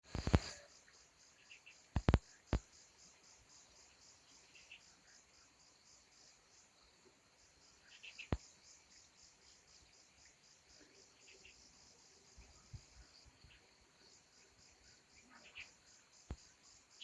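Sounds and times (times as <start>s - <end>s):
insects chirping: 0.0s - 17.0s
sharp clicks: 1.9s - 2.6s.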